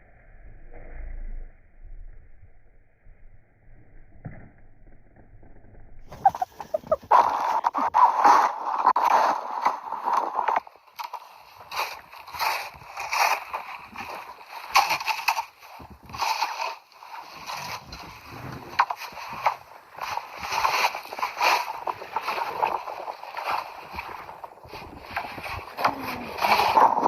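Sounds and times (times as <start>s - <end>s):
packed snow being scraped: 6.1s - 27.0s.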